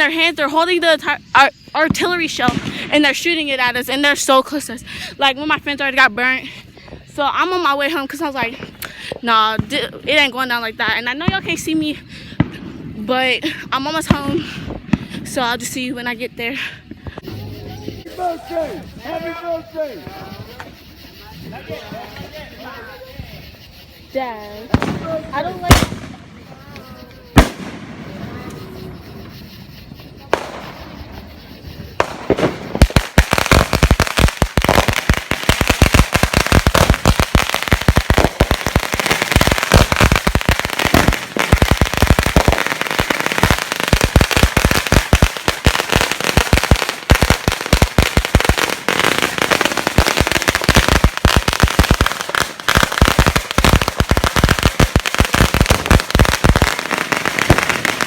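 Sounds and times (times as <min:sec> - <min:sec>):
firecrackers cracking: 0:01.8 - 0:04.3, 0:17.2 - 0:58.0.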